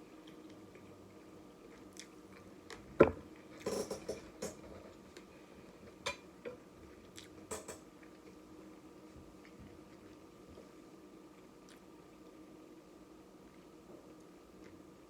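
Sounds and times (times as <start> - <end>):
wet chewing: 11.4 - 12.3.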